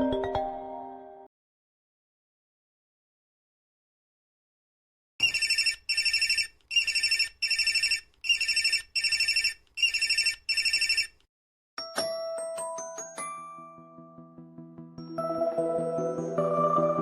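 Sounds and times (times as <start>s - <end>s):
old bell telephone ringing: 5.2s - 11.1s.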